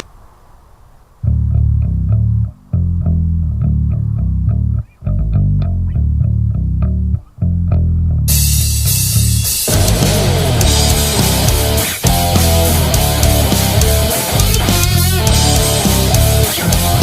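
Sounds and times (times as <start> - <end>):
bass guitar riff: 1.2 - 17.0
heavy rock music: 8.3 - 17.0.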